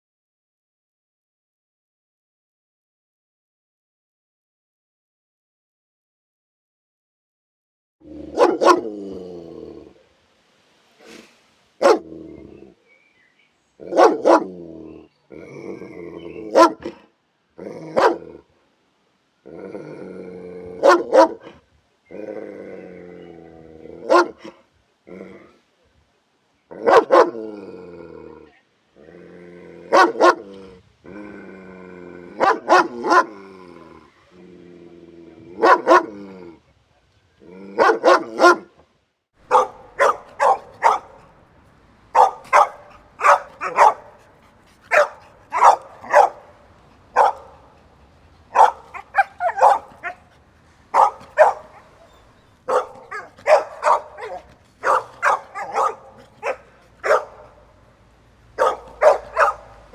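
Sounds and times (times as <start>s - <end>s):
low background hiss: 8.2s - 13.8s
dog barking: 8.3s - 8.9s, 11.8s - 12.1s, 13.8s - 14.5s, 16.5s - 17.0s, 17.9s - 18.4s, 20.8s - 21.6s, 24.0s - 24.6s, 26.8s - 27.4s, 29.9s - 30.5s, 32.4s - 33.3s, 35.6s - 36.1s, 37.8s - 38.7s, 39.4s - 41.4s, 42.0s - 59.9s
dog barking quickly: 8.3s - 8.9s, 11.8s - 12.1s, 13.9s - 14.5s, 16.5s - 17.0s, 18.0s - 18.3s, 20.8s - 21.5s, 24.0s - 24.5s, 26.8s - 27.4s, 29.9s - 30.4s, 32.4s - 33.3s, 37.8s - 38.7s, 39.4s - 41.4s, 42.0s - 59.9s.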